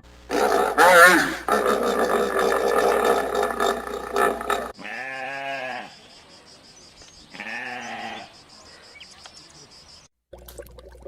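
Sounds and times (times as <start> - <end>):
rough animal call: 0.0 - 5.9
wavering bleat: 0.3 - 5.9, 7.3 - 8.3.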